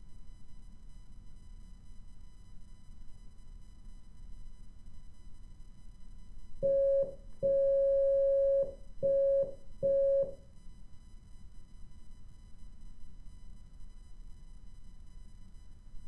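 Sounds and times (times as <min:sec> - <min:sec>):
morse code beeps: 0:06.6 - 0:10.4.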